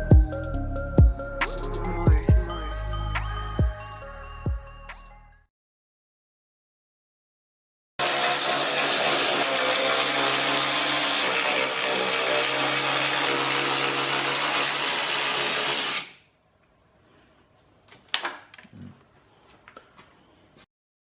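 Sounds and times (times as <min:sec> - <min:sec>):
power drill motor running: 0:08.0 - 0:16.2.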